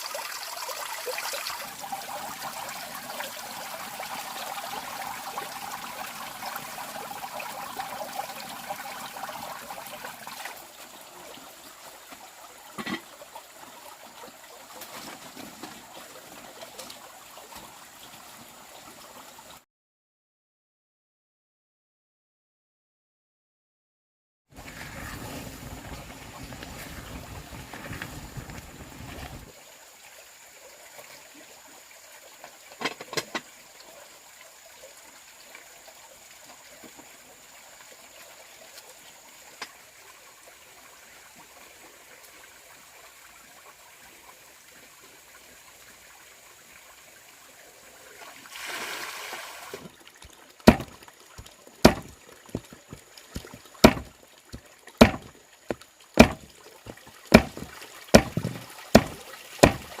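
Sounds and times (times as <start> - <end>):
sharp strikes on wood: 50.7 - 51.0, 51.8 - 52.7, 53.4 - 54.1, 55.0 - 55.3, 56.2 - 56.5, 57.3 - 60.0.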